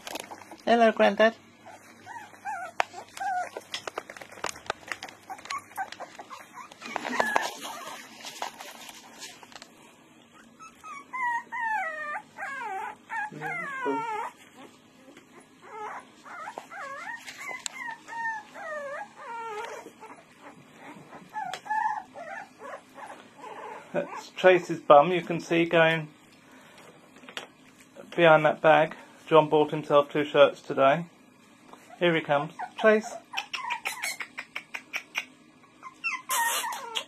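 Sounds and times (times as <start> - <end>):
puppy whining: 0.0 - 0.7, 1.5 - 9.4, 10.2 - 24.4, 31.7 - 37.0
rustling: 1.6 - 11.0, 15.6 - 23.3.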